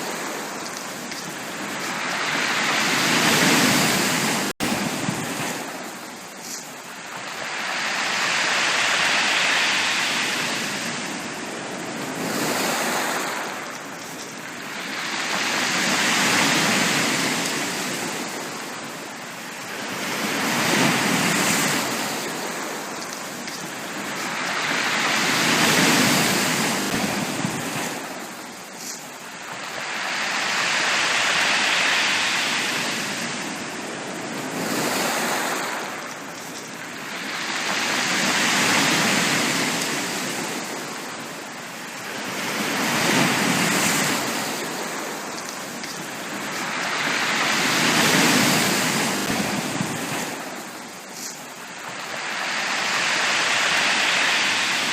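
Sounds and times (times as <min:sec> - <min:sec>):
sea waves washing onto beach: 0:00.0 - 0:54.9.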